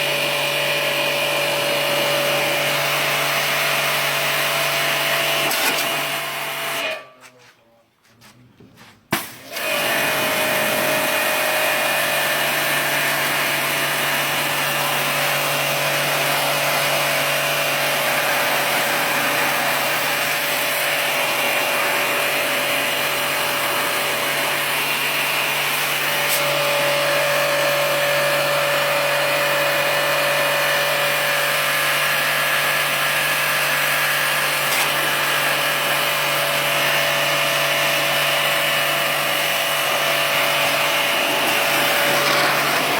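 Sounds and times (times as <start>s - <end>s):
machine motor humming and whining: 0.0s - 6.9s, 9.4s - 42.9s.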